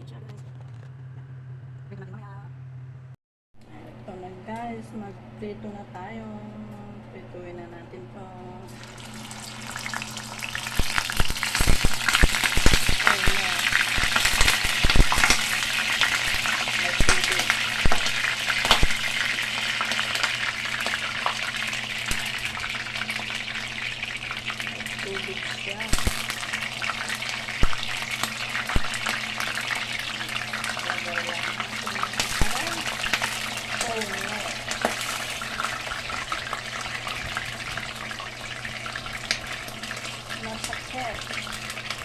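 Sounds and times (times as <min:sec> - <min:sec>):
food sizzling in hot oil: 0:08.7 - 0:42.0.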